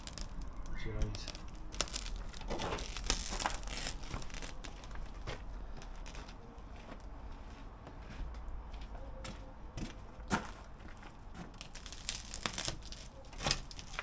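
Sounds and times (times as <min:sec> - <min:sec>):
rubber seal scraping and tearing: 0:00.0 - 0:06.4, 0:11.5 - 0:14.0.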